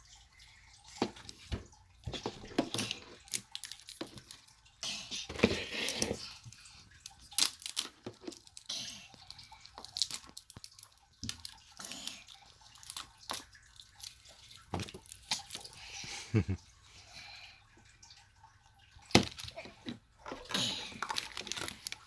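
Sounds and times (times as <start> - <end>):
plastic wrapping crinkling and tearing: 6.9 - 15.7, 20.4 - 22.0.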